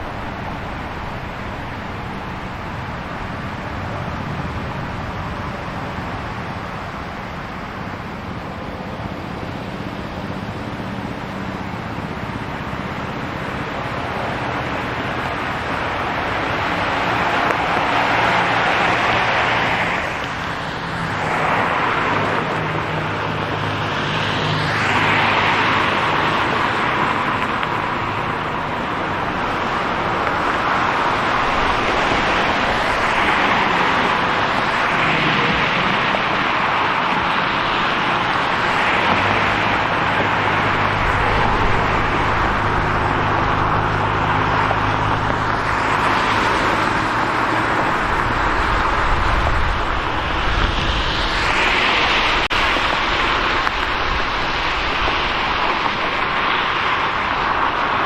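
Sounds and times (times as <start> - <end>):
cars passing: 0.0 - 58.0
steady engine hum: 0.0 - 58.0
deep engine rumble: 39.4 - 51.6.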